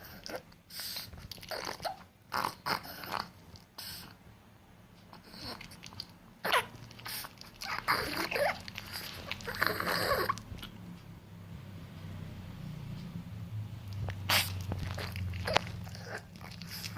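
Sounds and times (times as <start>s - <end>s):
dog chewing and licking: 1.1s - 1.9s, 5.4s - 10.8s, 13.9s - 16.9s.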